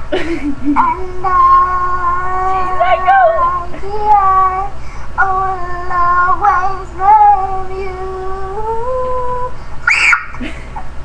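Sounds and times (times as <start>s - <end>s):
high-pitched voice singing: 0.8s - 9.5s.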